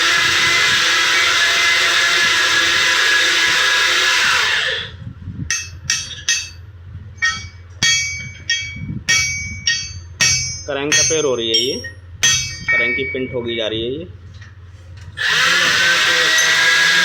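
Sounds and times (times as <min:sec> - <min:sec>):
workshop machine whining: 0:00.0 - 0:17.0
hammer blows on metal: 0:05.4 - 0:13.5.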